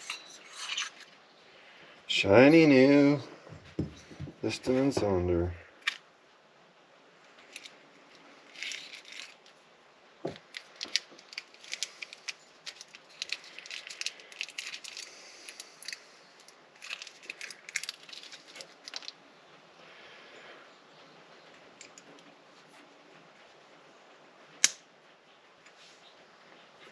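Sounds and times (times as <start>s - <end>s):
wrapping crinkling: 7.4s - 9.6s, 10.2s - 19.2s.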